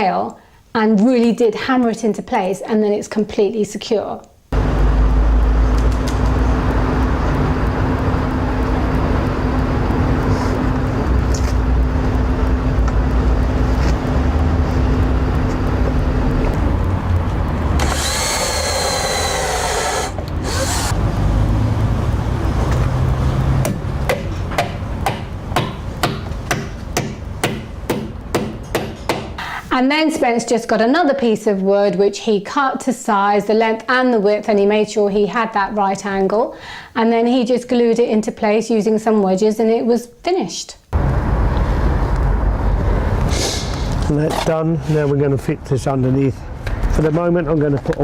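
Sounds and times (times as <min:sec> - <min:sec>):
power drill drilling wood: 0:17.8 - 0:21.0.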